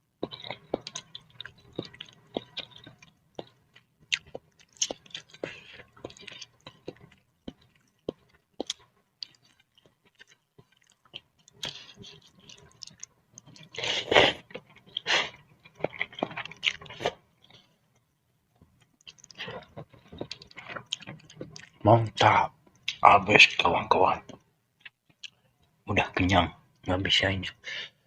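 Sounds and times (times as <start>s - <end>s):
person eating noodles: 0.2s - 17.8s.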